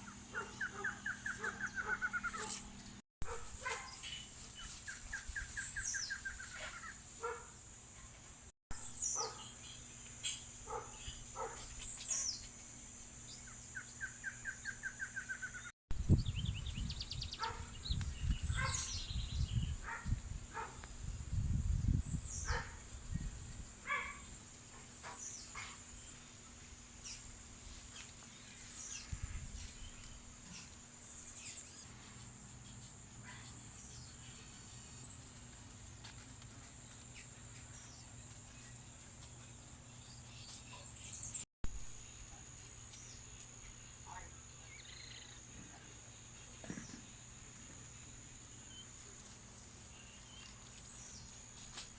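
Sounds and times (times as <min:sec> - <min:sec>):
insect drone: 0:41.7 - 0:50.2.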